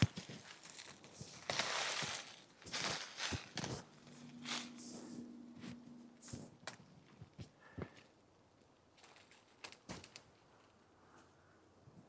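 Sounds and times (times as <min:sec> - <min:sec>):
faint low hum: 0:03.8 - 0:08.7.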